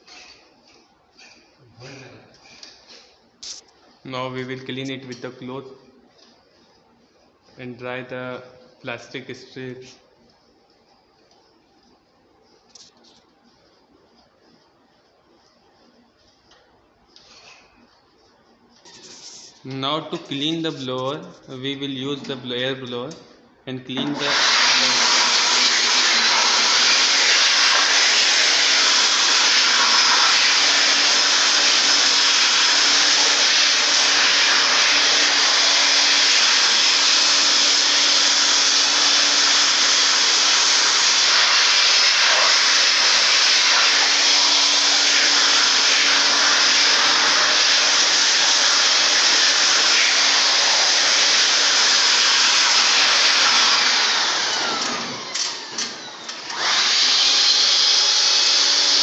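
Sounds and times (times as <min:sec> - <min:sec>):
electric air blower rushing hiss: 0:24.1 - 0:59.0.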